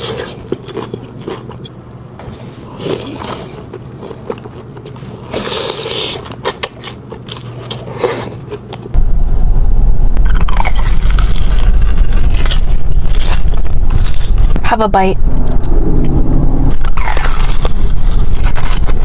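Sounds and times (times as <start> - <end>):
mouth crunching and chewing food: 0.0 - 9.0, 10.2 - 14.6, 16.7 - 19.0
loud steady low rumble: 8.9 - 19.0.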